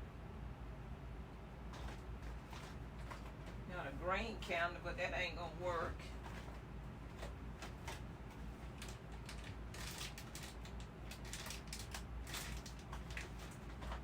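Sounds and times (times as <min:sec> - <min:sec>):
small objects clicking and rustling: 0:08.8 - 0:14.0.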